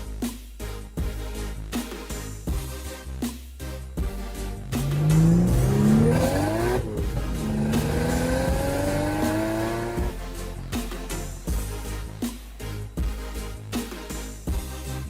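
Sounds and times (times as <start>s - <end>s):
car engine accelerating: 4.6s - 10.2s.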